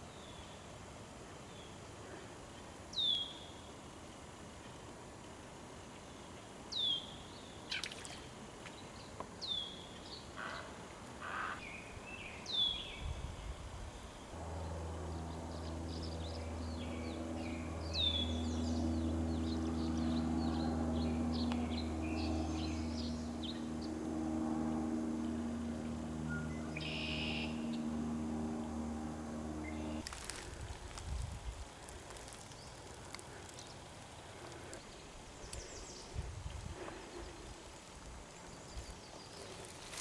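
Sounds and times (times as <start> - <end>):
low engine drone: 14.2 - 31.0
bird with high downward call: 26.3 - 27.8.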